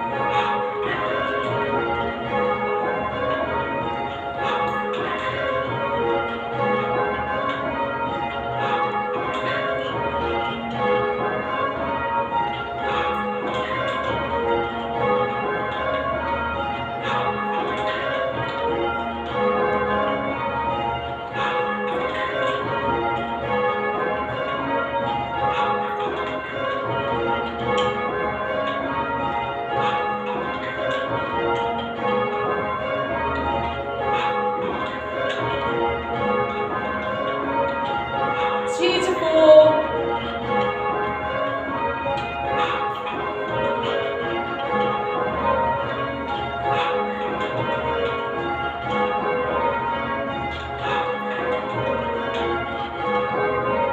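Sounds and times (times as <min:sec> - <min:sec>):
church bells ringing: 0:00.0 - 0:53.9.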